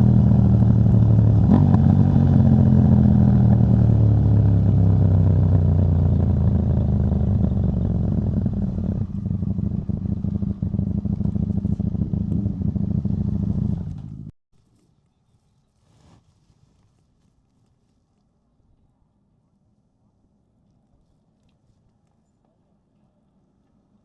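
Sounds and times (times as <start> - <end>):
motorcycle engine running: 0.0 - 14.3.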